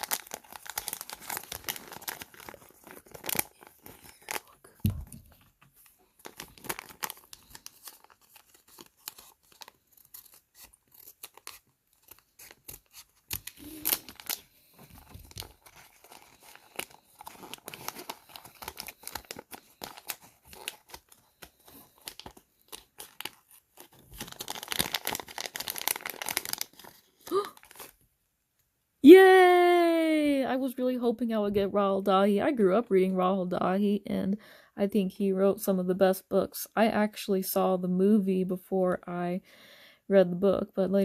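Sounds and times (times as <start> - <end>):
plastic packaging crinkling and tearing: 0.0 - 28.0.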